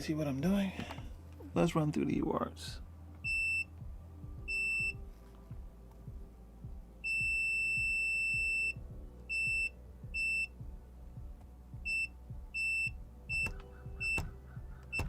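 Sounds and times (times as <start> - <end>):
multimeter continuity beeps: 3.2 - 3.7, 4.4 - 5.0, 7.0 - 10.6, 11.8 - 15.0
probe clicks: 11.9 - 15.0.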